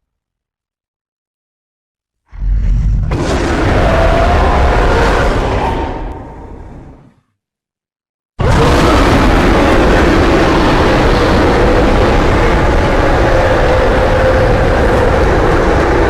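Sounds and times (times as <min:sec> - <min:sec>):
harsh monster roar: 0:02.3 - 0:07.2, 0:08.4 - 0:16.0.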